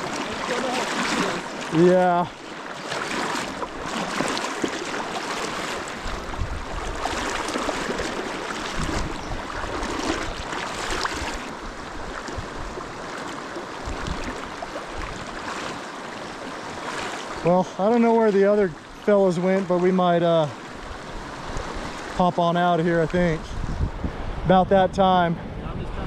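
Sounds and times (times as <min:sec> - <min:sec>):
fast river current rushing: 0:00.0 - 0:24.5.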